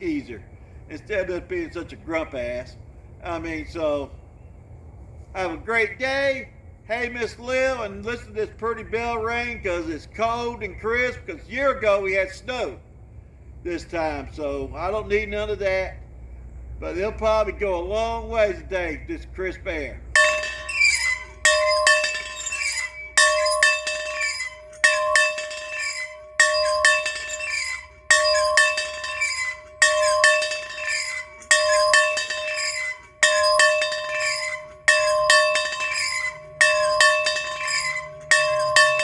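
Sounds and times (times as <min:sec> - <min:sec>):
bell ringing: 0:20.2 - 0:39.0
clapper clank: 0:20.2 - 0:39.0.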